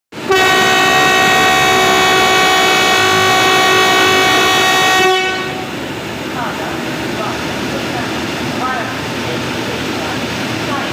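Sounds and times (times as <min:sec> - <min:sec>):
locomotive horn blast: 0:00.2 - 0:05.9.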